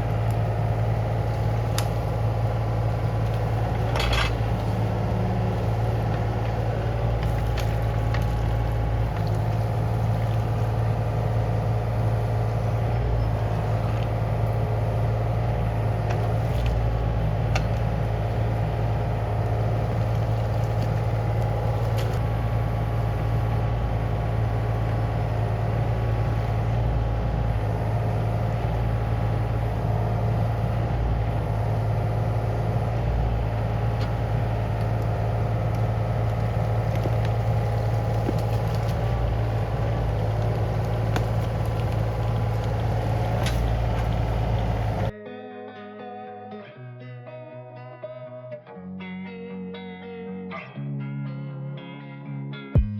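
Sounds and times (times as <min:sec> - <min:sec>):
diesel engine running: 0:00.0 - 0:45.1.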